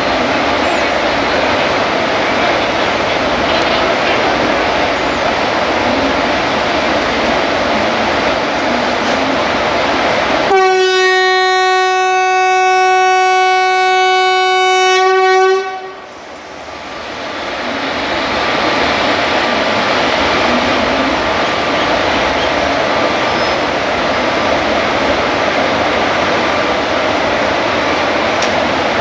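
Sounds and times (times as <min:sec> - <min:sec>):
train noise: 0:00.0 - 0:29.0
locomotive horn blast: 0:10.4 - 0:16.2.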